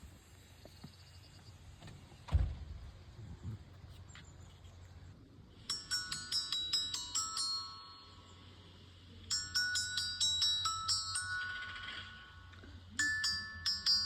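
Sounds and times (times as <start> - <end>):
low thump: 2.2 - 2.9
tinkling bell-like tune: 5.6 - 14.0.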